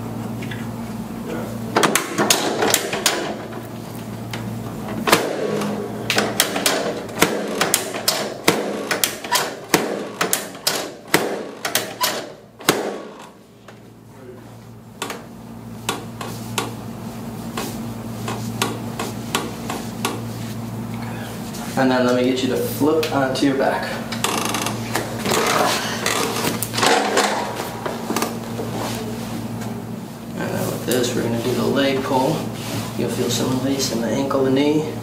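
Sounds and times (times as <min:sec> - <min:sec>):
steady low hum: 0:00.0 - 0:35.0
sharp knocks and clicks: 0:05.0 - 0:13.3, 0:17.6 - 0:20.2.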